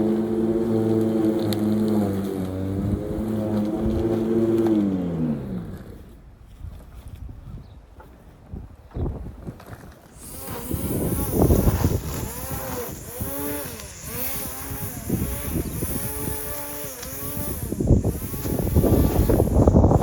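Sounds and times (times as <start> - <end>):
lawn mower engine running: 0.0 - 6.0, 10.1 - 20.0.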